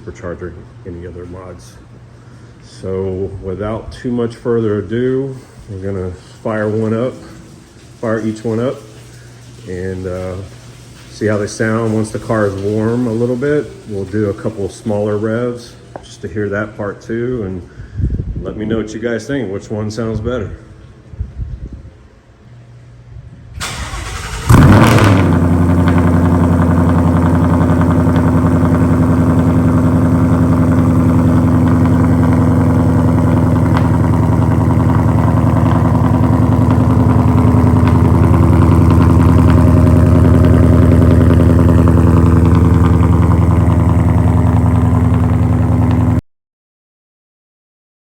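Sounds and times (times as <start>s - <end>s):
starter motor cranking: 23.6s - 44.8s
loud engine idling: 23.6s - 46.2s.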